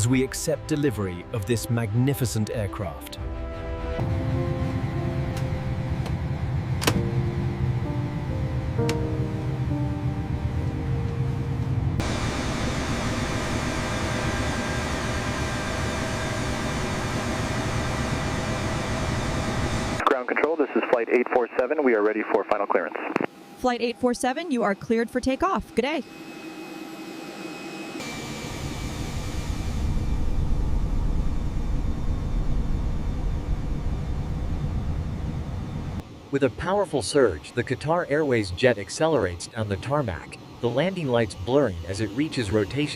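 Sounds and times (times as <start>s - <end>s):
background music: 0.0s - 12.0s
jet engines humming: 0.0s - 42.9s.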